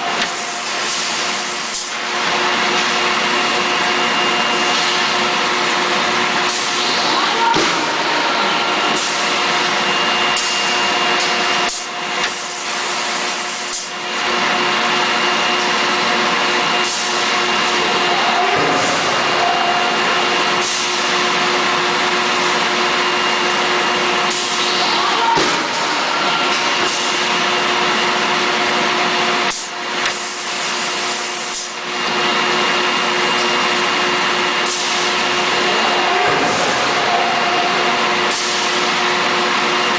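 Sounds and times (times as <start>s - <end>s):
machine whine: 0.0s - 39.9s
industrial machine hiss: 34.6s - 39.9s.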